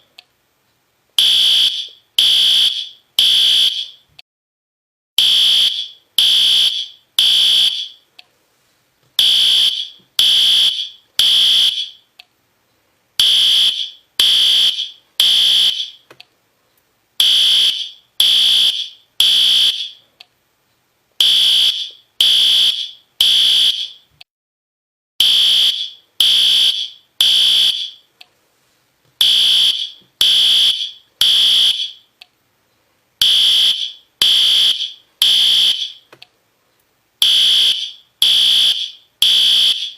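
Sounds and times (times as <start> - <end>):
fire alarm horn beeping: 1.2 - 4.0, 5.2 - 8.0, 9.2 - 12.0, 13.2 - 16.0, 17.2 - 20.0, 21.2 - 24.0, 25.2 - 28.1, 29.2 - 32.1, 33.2 - 36.1, 37.2 - 39.9.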